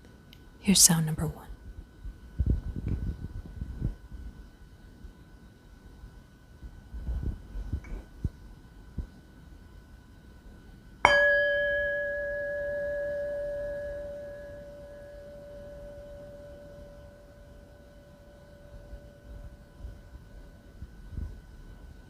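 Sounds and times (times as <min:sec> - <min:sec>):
singing bowl ringing: 0:11.0 - 0:20.6.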